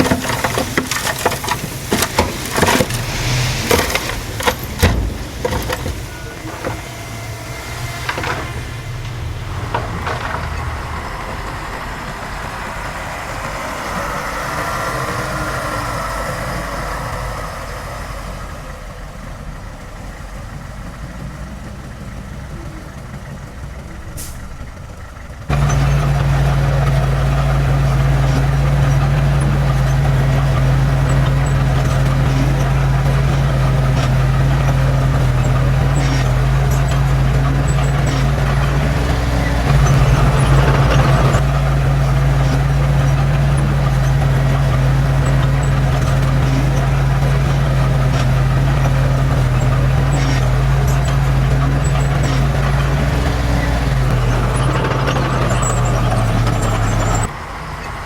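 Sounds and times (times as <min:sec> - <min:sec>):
clanks and knocks: 0:00.0 - 0:13.6
heavy machinery diesel engine: 0:00.0 - 0:58.0.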